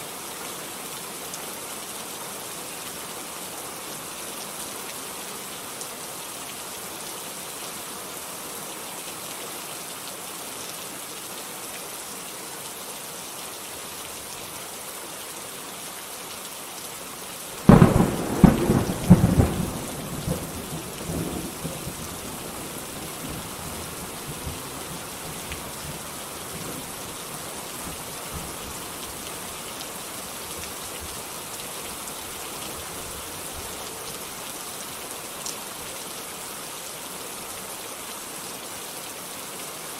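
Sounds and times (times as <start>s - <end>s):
heavy rain: 0.0s - 39.9s
thunder cracking and rumbling: 17.7s - 22.2s.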